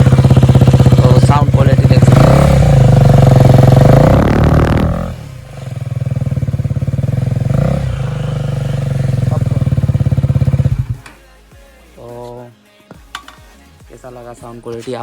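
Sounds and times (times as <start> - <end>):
motorcycle engine revving: 0.0 - 11.0.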